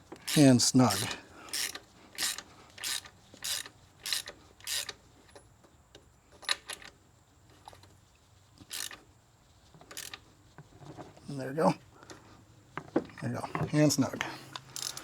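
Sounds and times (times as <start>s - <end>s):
ratchet wrench clicking: 0.2s - 5.0s, 8.7s - 9.0s, 9.9s - 10.2s, 14.7s - 15.0s.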